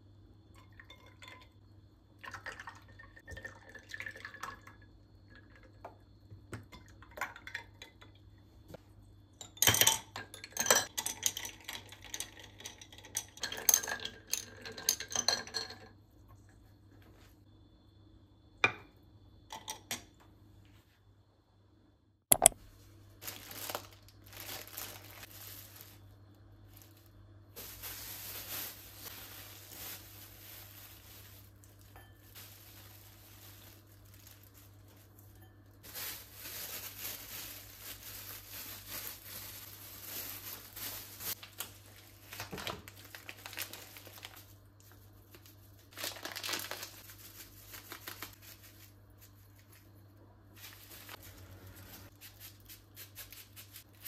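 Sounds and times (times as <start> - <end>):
sharp click: 22.3 - 22.6
crinkling and rustling handling: 23.2 - 52.7.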